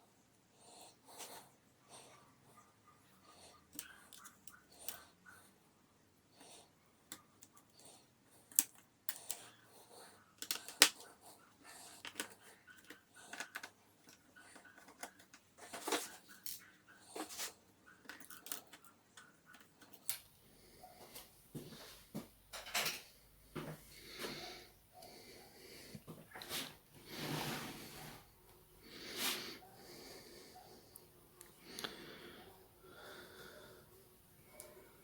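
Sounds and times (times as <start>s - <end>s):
hand tools clicking and tapping: 10.4s - 11.0s, 12.0s - 16.6s.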